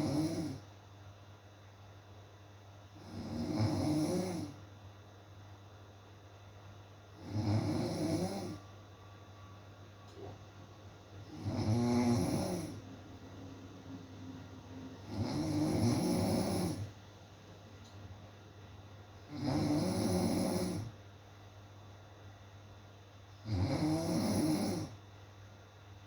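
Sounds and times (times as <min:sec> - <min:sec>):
person snoring: 0:00.0 - 0:00.6, 0:03.0 - 0:04.6, 0:07.2 - 0:08.6, 0:11.2 - 0:12.8, 0:15.0 - 0:16.9, 0:19.3 - 0:21.0, 0:23.4 - 0:25.0.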